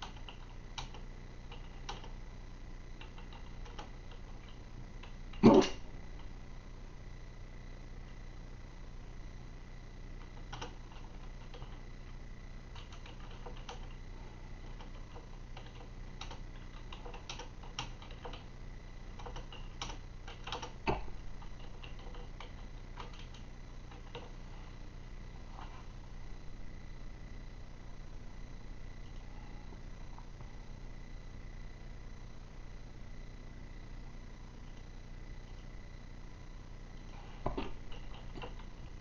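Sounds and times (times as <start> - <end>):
soft irregular clicks: 0.0 - 2.2, 3.0 - 5.2, 10.2 - 14.0, 14.7 - 18.5, 19.1 - 24.3.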